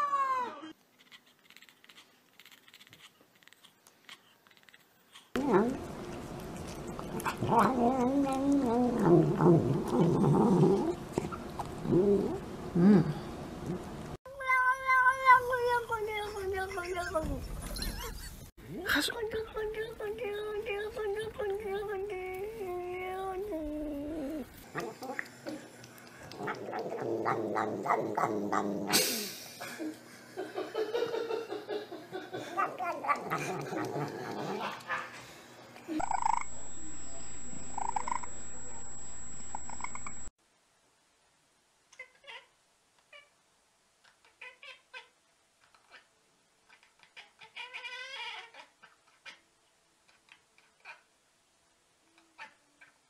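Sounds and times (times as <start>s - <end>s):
cat yowling: 0.0s - 0.8s
noisy burst: 36.0s - 40.3s.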